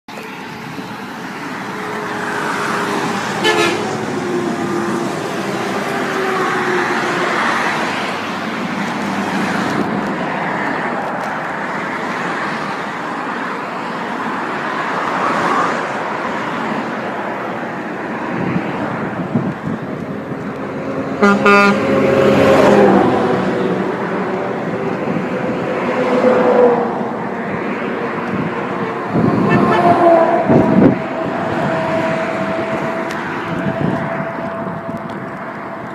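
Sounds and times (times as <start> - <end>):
road traffic passing: 0.1 - 35.9
truck horn blast: 3.3 - 4.2, 21.2 - 22.4, 28.8 - 31.0.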